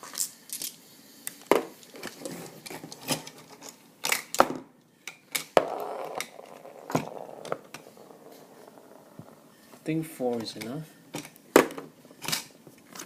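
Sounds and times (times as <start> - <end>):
marbles clicking against plastic: 5.4 - 7.9.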